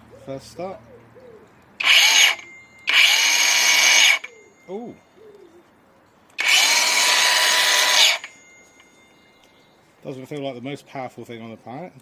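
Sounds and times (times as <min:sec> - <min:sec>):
circular saw whining: 0:01.8 - 0:04.5, 0:06.4 - 0:09.2.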